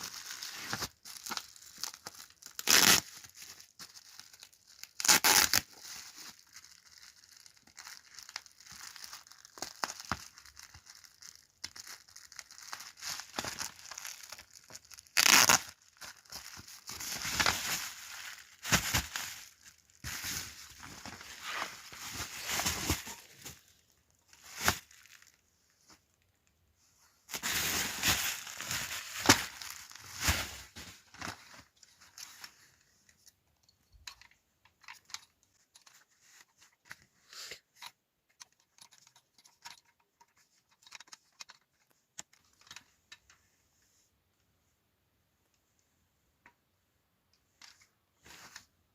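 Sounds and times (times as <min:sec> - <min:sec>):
packaging ripping and rustling: 0:00.0 - 0:25.4, 0:27.3 - 0:32.5.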